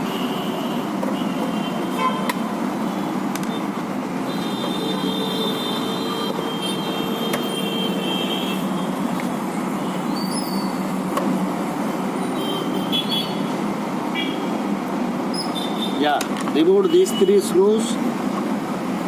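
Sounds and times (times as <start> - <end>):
vehicle horns tooting: 0.0 - 2.5, 4.3 - 9.0, 12.2 - 14.5, 15.3 - 16.0, 16.7 - 17.5
road traffic noise: 0.0 - 19.0.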